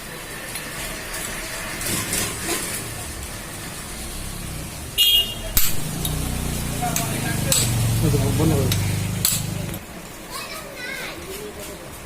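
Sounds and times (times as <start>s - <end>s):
sharp metallic knocks: 5.5s - 6.3s, 6.9s - 7.9s, 8.6s - 9.8s.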